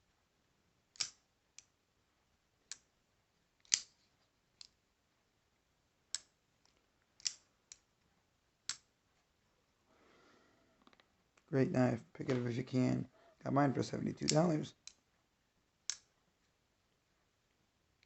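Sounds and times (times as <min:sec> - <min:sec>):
folding knife clicks: 0:00.9 - 0:01.7, 0:03.6 - 0:03.9, 0:07.2 - 0:07.8, 0:14.2 - 0:15.0.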